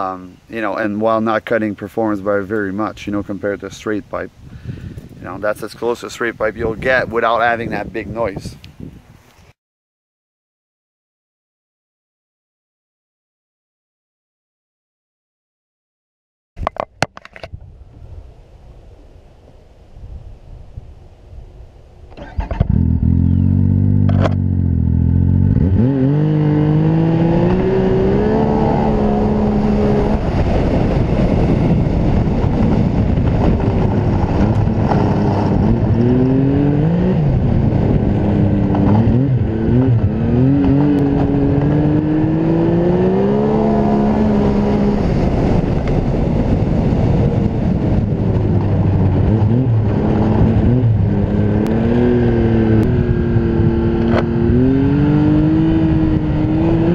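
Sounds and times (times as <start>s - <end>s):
snowmobile engine revving: 22.2s - 46.3s, 48.9s - 56.9s.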